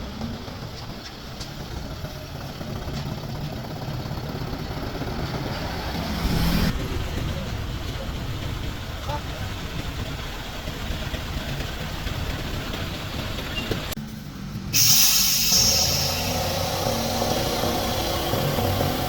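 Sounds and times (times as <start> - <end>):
vehicle engine rumble: 0.0 - 19.0
loud hiss: 14.7 - 19.0.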